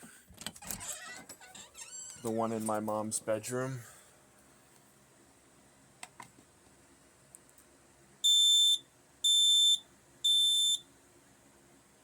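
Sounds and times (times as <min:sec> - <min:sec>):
smoke alarm beeps: 0:08.2 - 0:10.9.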